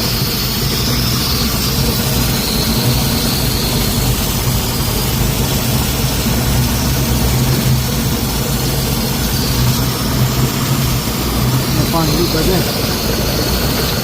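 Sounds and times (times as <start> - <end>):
car engine idling: 0.0 - 14.0
steady hiss: 0.0 - 14.0.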